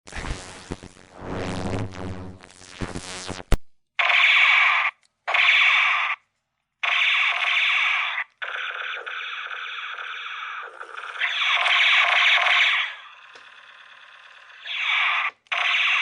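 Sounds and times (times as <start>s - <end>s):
electronic hum: 0.1s - 3.7s
electronic buzzing bursts: 0.1s - 4.2s, 10.7s - 16.0s.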